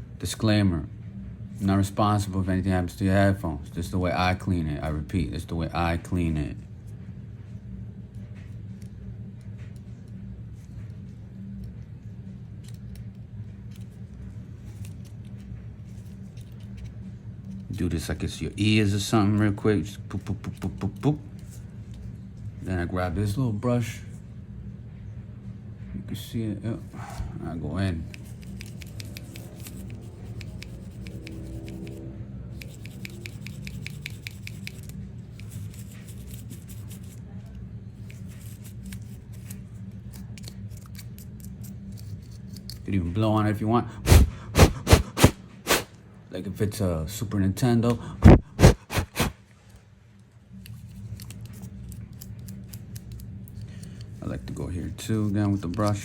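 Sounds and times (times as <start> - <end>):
steady low hum: 0.0 - 56.0
brush scrubbing: 28.1 - 32.0, 32.6 - 37.2, 44.0 - 45.9, 48.2 - 49.4
puffs of breath blown: 43.9 - 45.9.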